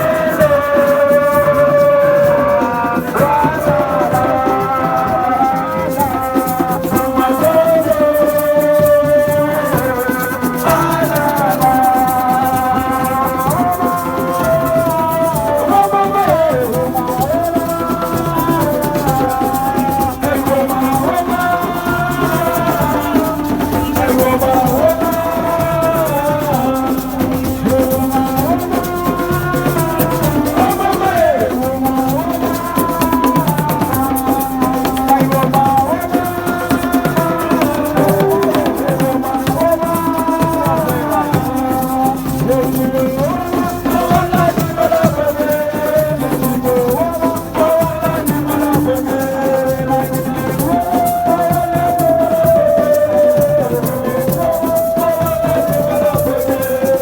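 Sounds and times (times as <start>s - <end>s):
drums beat: 0.0s - 57.0s
shaker rattles: 0.0s - 57.0s
gliding melody: 37.6s - 40.5s.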